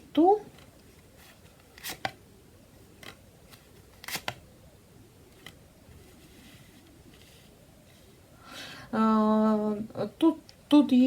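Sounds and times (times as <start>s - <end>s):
cards swishing and tapping: 0.5s - 2.2s, 3.0s - 4.4s.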